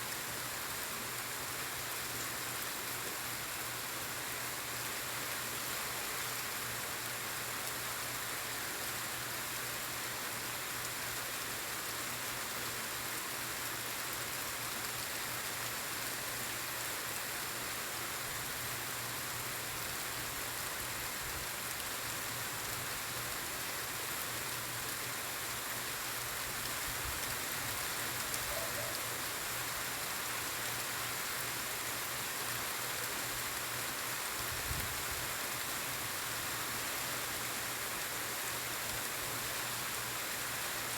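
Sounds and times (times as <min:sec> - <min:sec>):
quiet rain falling: 0:00.0 - 0:40.9.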